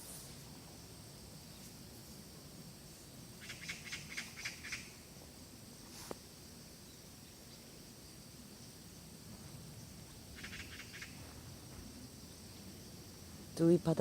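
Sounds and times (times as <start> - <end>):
outdoor background hiss: 0.0 - 14.0
bird chirping: 3.4 - 5.0.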